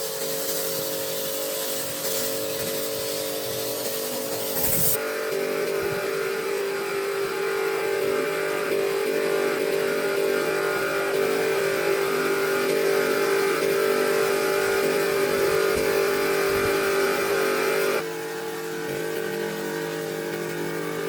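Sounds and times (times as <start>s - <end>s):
car engine running steadily: 8.7s - 17.5s.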